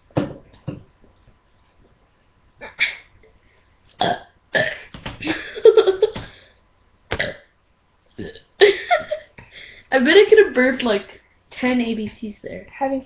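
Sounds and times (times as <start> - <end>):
girl burping: 4.0 - 4.9, 8.2 - 8.6.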